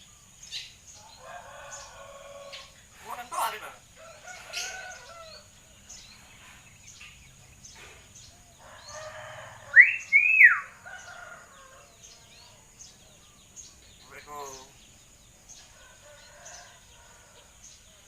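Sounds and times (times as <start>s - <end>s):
bird soft chatter: 0.0s - 9.3s
bird harsh raspy call: 2.6s - 5.5s, 8.8s - 11.3s.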